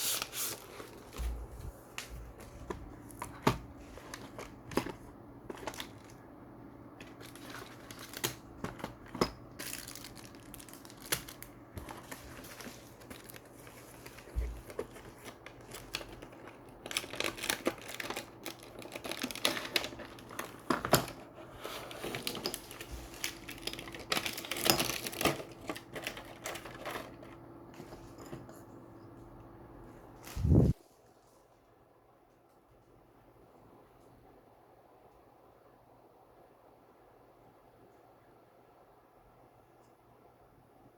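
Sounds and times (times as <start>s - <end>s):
plastic packaging crinkling: 0.0s - 6.2s, 7.0s - 27.4s
faint steady hum: 0.0s - 40.9s.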